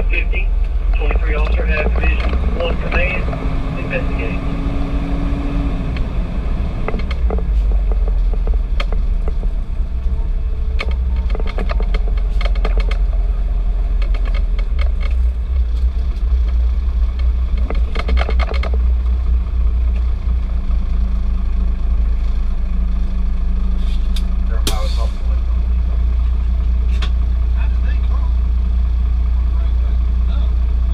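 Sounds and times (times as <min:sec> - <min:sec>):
diesel engine rumbling: 0:00.0 - 0:30.9
short clicks and rattles: 0:17.2 - 0:18.8.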